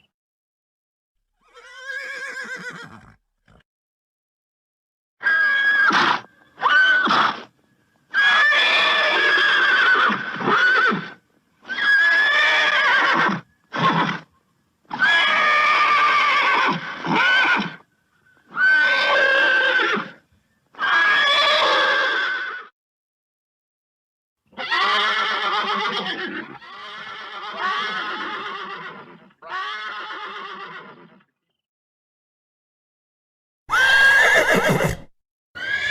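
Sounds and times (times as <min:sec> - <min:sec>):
horse neighing: 0:01.4 - 0:03.6, 0:08.1 - 0:14.3, 0:24.6 - 0:31.2, 0:33.7 - 0:35.9.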